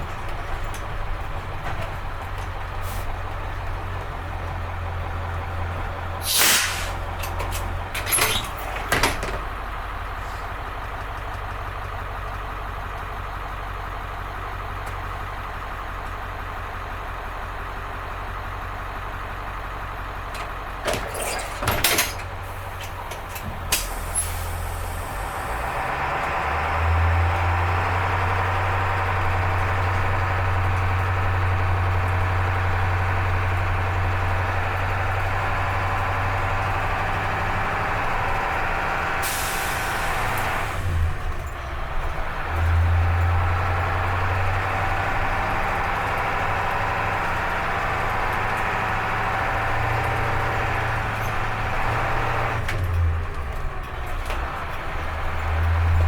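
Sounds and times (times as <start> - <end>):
diesel bus engine running: 0.0 - 56.0.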